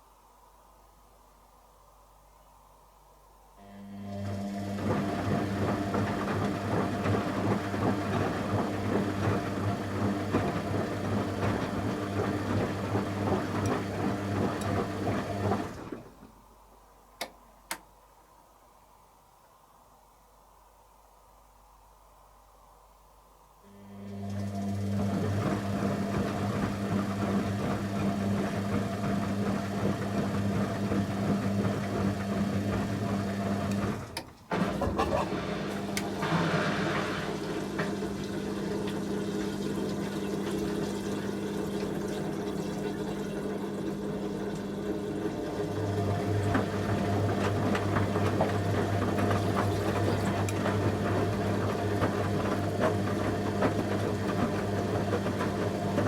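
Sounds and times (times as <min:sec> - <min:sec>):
washing machine hum: 0:03.3 - 0:19.9, 0:23.6 - 0:56.0
water gurgling through drain: 0:34.7 - 0:55.5.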